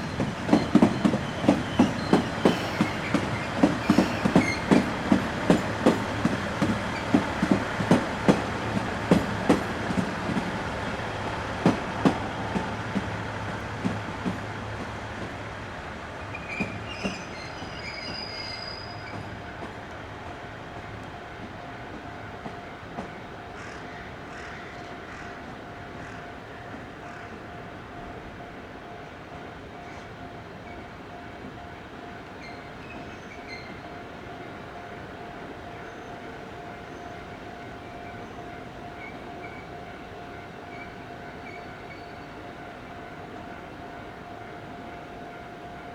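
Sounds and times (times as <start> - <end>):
train wheels clacking over rail joints: 0.0 - 10.6
train rumble: 0.0 - 45.9
faint high squeal: 16.3 - 19.3.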